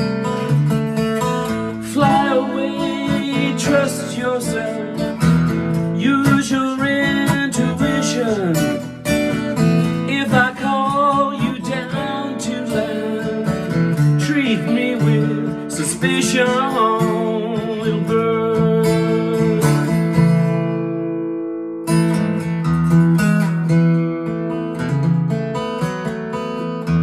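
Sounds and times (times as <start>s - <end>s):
acoustic guitar strummed: 0.0s - 27.0s.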